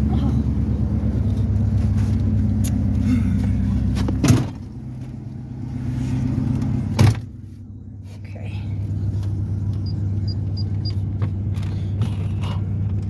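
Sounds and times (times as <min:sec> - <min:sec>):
truck engine idling: 0:00.0 - 0:13.0.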